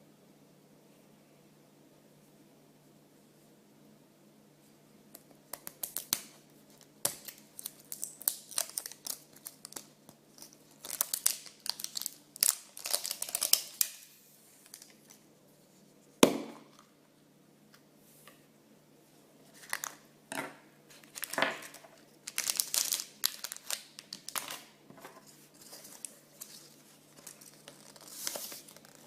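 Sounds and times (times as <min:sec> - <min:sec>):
packaging crinkling and tearing: 0:05.6 - 0:15.2, 0:20.9 - 0:29.0.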